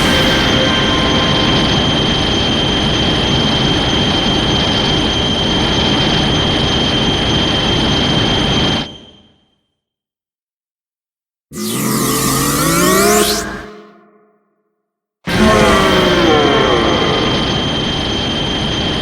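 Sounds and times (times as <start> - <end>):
rushing noise with whistling tone: 0.0 - 9.5, 15.7 - 19.0.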